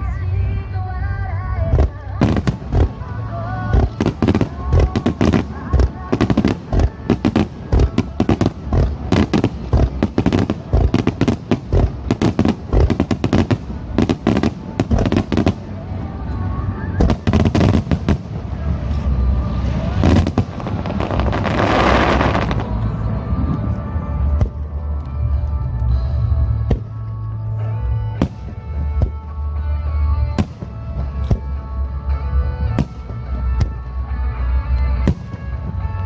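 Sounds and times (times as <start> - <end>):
firework bangs and crackles: 1.7 - 27.2, 28.2 - 29.2, 30.3 - 31.6, 32.7 - 33.9, 34.9 - 36.0.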